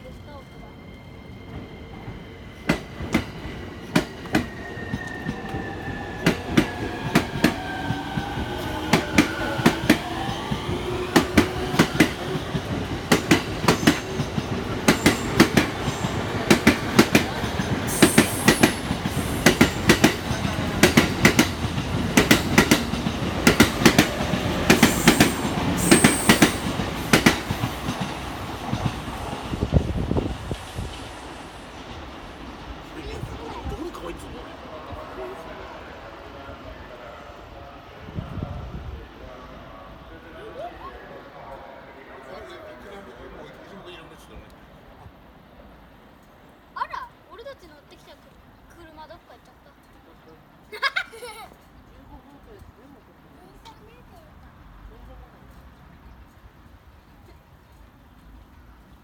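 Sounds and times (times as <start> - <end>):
train wheels clattering: 1.5 - 29.4
wheel squeals: 4.3 - 6.9.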